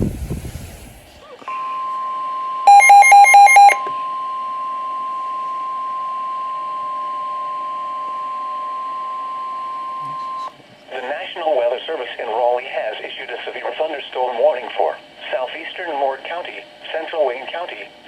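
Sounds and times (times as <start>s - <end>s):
rapid alarm beeps: 2.7s - 3.8s
steady electronic alert tone: 2.7s - 3.8s.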